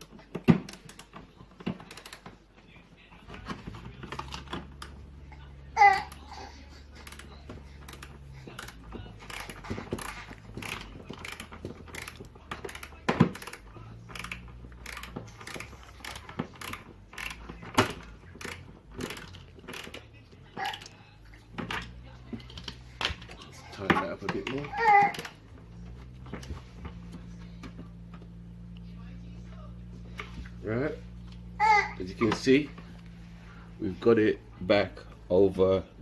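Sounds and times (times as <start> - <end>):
screwdriver clicks and ticks: 7.0 - 20.0.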